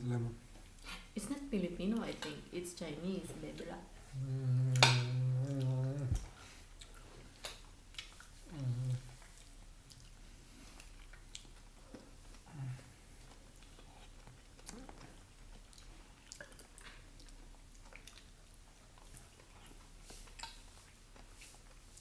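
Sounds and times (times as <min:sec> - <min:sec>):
low hum of a voice: 0:00.0 - 0:00.4, 0:01.2 - 0:06.4, 0:08.5 - 0:09.2
people chewing food: 0:00.0 - 0:22.0.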